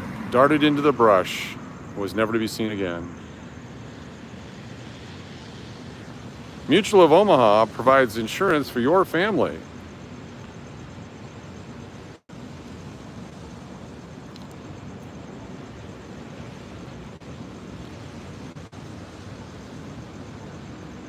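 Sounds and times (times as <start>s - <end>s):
floodwater rushing: 0.0s - 9.6s.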